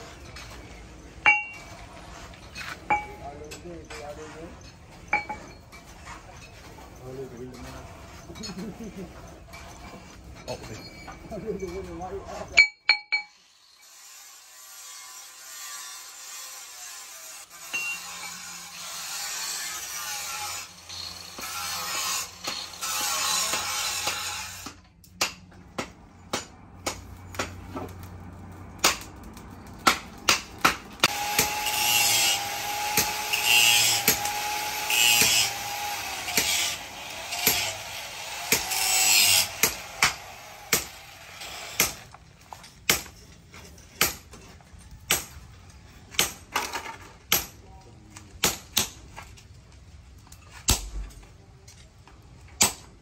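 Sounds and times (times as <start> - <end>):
hammer striking steel: 1.2 - 1.8, 2.8 - 3.6, 5.1 - 5.8, 12.6 - 13.4, 17.6 - 18.4, 20.9 - 28.0, 28.8 - 29.2, 29.8 - 41.0, 41.8 - 42.0, 45.1 - 45.4, 46.1 - 46.5
power tool whining and rasping: 13.4 - 24.8, 30.6 - 42.2.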